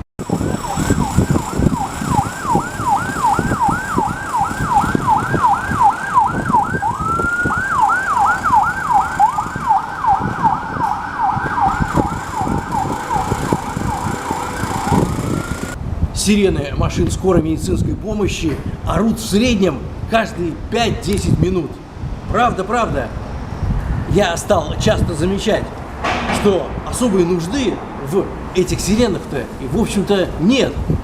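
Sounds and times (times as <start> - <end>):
ambulance siren yelping: 0.2 - 15.8.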